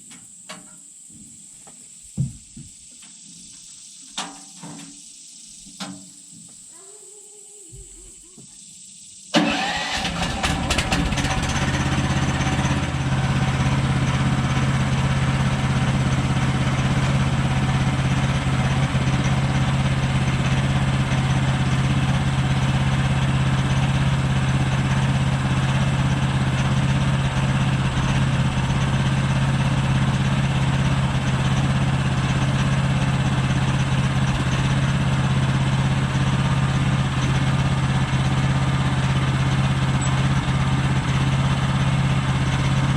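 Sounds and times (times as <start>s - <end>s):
sawmill engine running: 9.4s - 42.9s.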